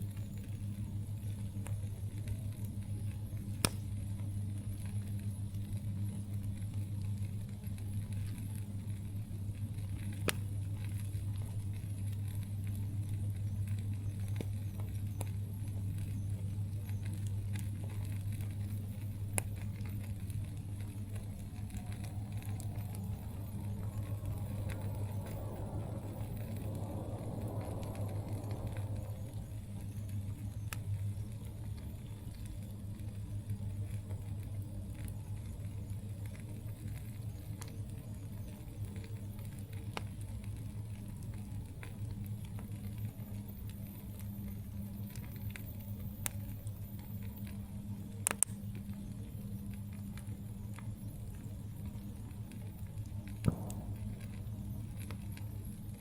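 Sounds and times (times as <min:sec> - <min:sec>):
campfire crackling and popping: 0:00.0 - 0:56.0
low hum: 0:00.0 - 0:56.0.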